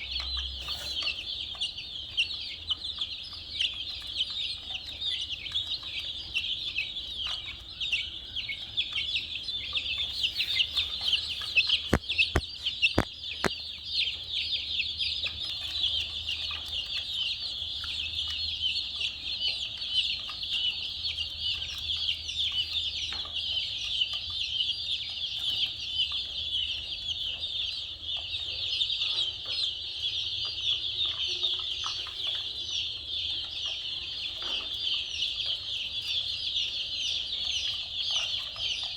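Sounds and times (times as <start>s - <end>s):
baby chicks peeping: 0.0s - 38.9s
sharp clicks: 11.2s - 13.6s.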